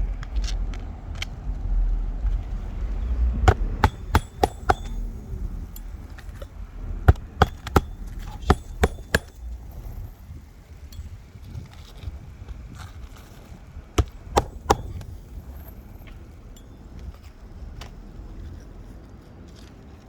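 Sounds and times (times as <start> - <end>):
hammer striking roof shingles: 3.4 - 9.7, 14.0 - 15.4.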